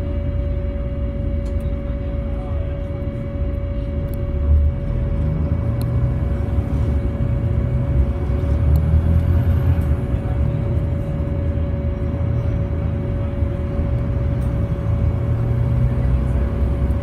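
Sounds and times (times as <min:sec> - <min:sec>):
bus engine and road rumble: 0:00.0 - 0:17.0
steady whining tone: 0:00.0 - 0:17.0.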